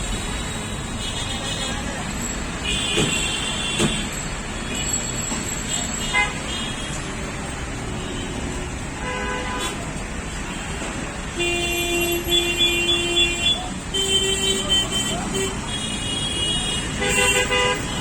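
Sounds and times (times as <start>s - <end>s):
low traffic noise: 0.0s - 18.0s.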